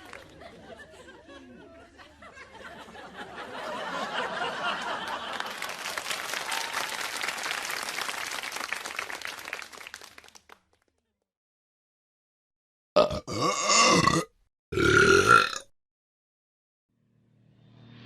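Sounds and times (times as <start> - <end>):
crowd applauding: 0.0 - 1.1, 3.3 - 11.1.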